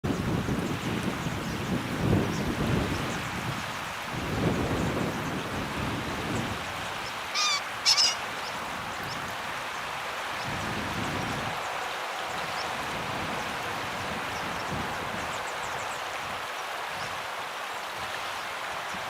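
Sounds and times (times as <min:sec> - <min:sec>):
steady background hiss: 0:06.5 - 0:19.0.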